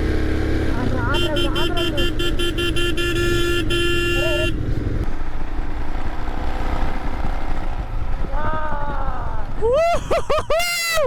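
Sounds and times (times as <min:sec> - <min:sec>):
vehicle engine and tyres rumbling: 0:00.0 - 0:11.0
vehicle horn honking: 0:01.0 - 0:04.7.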